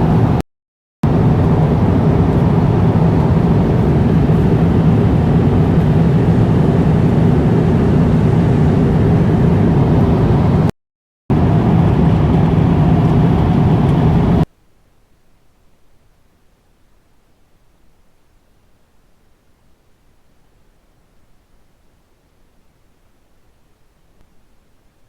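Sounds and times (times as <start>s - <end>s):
airliner cabin drone: 0.0s - 0.4s, 1.0s - 10.7s, 11.3s - 14.5s.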